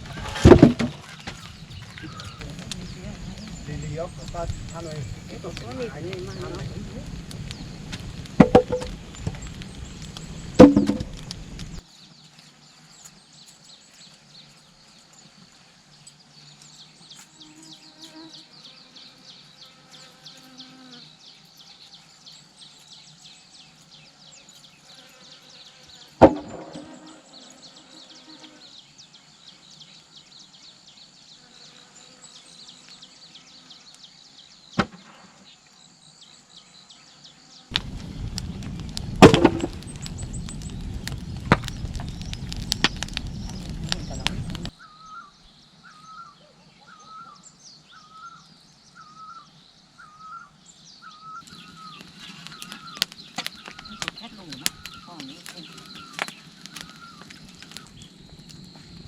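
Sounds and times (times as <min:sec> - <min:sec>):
insects buzzing and chirring: 0:00.0 - 0:59.0
sharp knocks: 0:08.4 - 0:09.0, 0:10.6 - 0:11.2, 0:26.2 - 0:27.0, 0:39.2 - 0:39.8.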